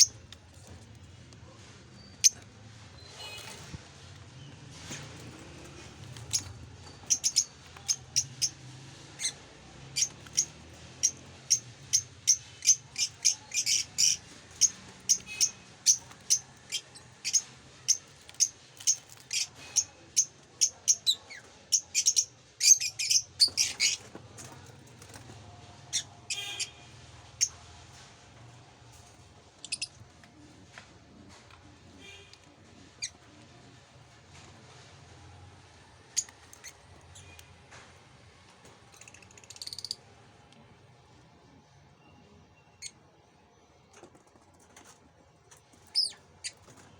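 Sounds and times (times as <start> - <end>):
lovebirds chirping: 5.8 - 8.6, 10.0 - 24.1.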